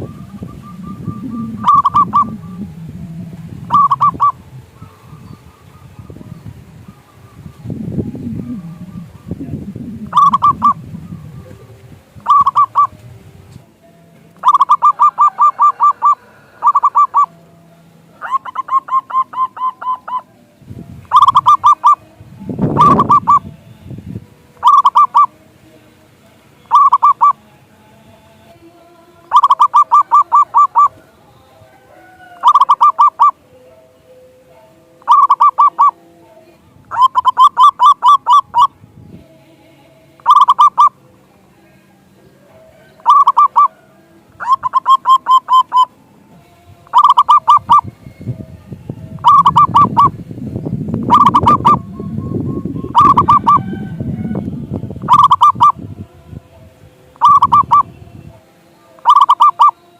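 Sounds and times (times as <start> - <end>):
dove staccato cooing: 0.0 - 6.3, 6.9 - 13.1, 14.4 - 17.3, 18.2 - 20.3, 21.1 - 22.0, 22.6 - 23.4, 24.6 - 25.3, 26.7 - 27.4, 29.3 - 31.1, 32.3 - 33.4, 35.0 - 36.0, 36.9 - 38.8, 40.2 - 41.0, 42.6 - 46.0, 46.8 - 47.9, 49.2 - 50.2, 51.0 - 52.0, 52.8 - 54.4, 55.0 - 55.8, 57.2 - 57.9, 59.0 - 59.8
brief low noise: 7.7 - 11.8.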